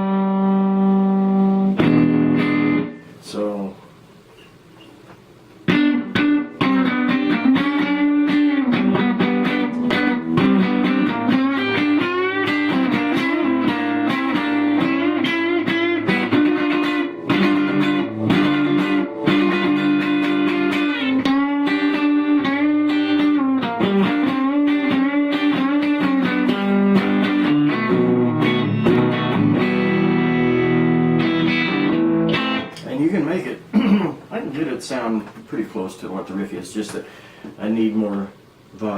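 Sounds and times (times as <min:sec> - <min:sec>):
electric guitar riff: 0:00.0 - 0:03.2, 0:05.6 - 0:32.9.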